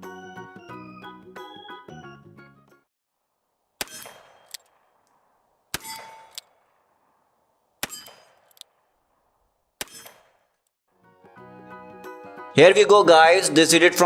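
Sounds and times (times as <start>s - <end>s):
sharp metallic clangs: 3.8s - 7.0s, 7.8s - 9.0s, 9.8s - 10.6s.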